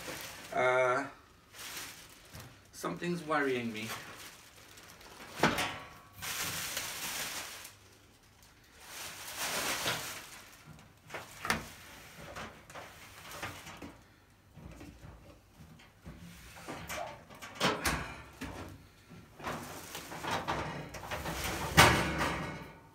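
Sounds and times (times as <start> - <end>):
wrapping rustling: 0.0 - 14.1, 19.4 - 21.7.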